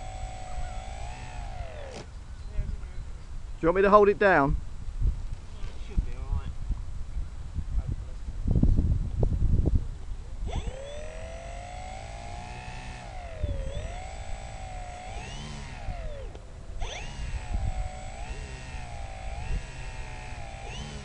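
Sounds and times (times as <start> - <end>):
electric motor and propeller whine: 0.0 - 2.9, 10.2 - 21.0
wind buffeting microphone: 0.0 - 21.0.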